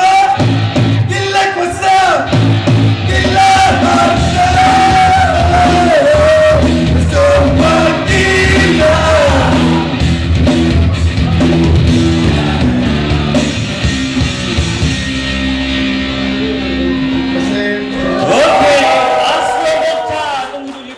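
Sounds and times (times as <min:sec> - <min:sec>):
rock band playing: 0:00.0 - 0:19.2
man singing rock song: 0:01.0 - 0:02.4, 0:03.0 - 0:10.0.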